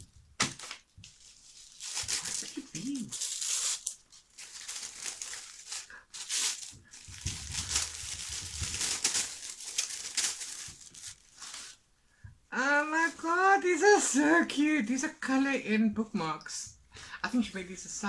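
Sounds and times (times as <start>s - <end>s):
gift wrapping crinkling and tearing: 0.4s - 11.8s.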